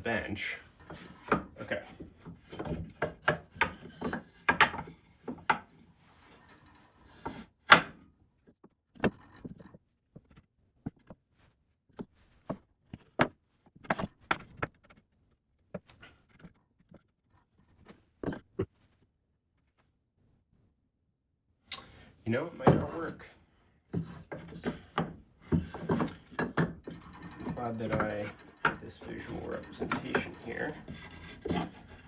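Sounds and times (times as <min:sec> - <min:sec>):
wooden knocks and clunks: 0:00.8 - 0:05.8, 0:17.8 - 0:18.8, 0:22.5 - 0:32.0.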